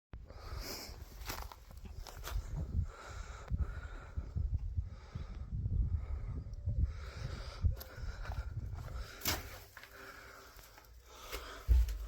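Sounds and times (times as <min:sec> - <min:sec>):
low rumble on microphone: 0:00.3 - 0:09.2
footsteps on rough ground: 0:01.0 - 0:02.8, 0:07.8 - 0:12.0.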